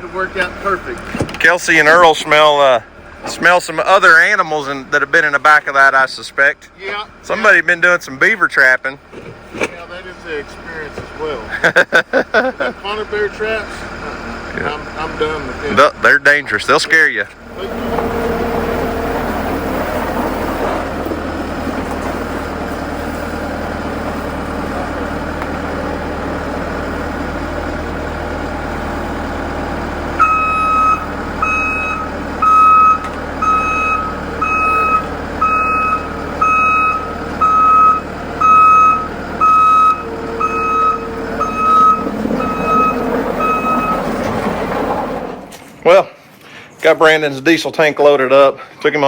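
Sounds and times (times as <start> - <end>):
vehicle engine running: 9.0 - 45.8
backup alarm beeping: 30.2 - 44.4.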